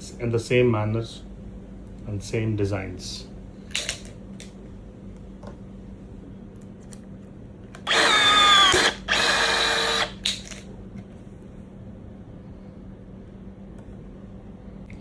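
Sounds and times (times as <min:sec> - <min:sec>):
rivet tool motor whining: 0:07.8 - 0:10.2.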